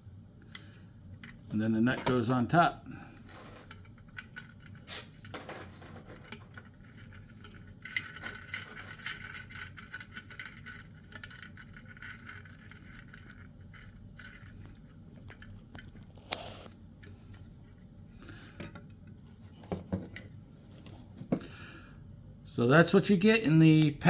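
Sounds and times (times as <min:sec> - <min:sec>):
small metal hardware clinking: 0:03.1 - 0:16.0.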